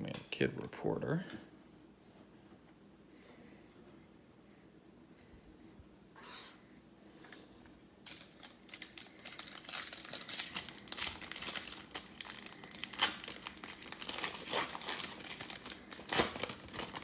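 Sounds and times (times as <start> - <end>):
card pack wrapper crinkling: 8.0 - 17.0.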